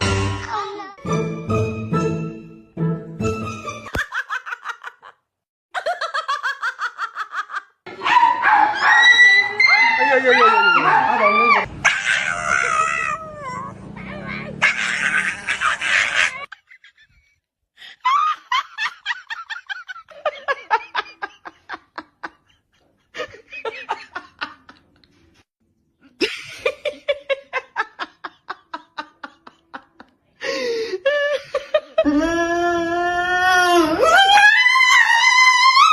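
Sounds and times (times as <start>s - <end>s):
laughter: 3.9s - 7.8s, 18.0s - 25.2s, 26.1s - 30.3s, 31.0s - 32.1s.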